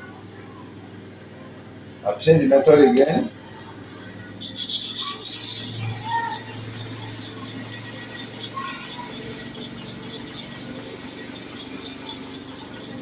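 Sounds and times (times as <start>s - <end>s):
blade scraping on sharpening stone: 4.4s - 13.0s.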